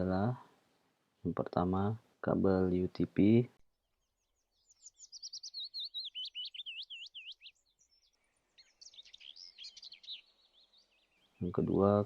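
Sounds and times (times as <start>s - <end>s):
songbird twittering chirps: 3.7s - 12.0s.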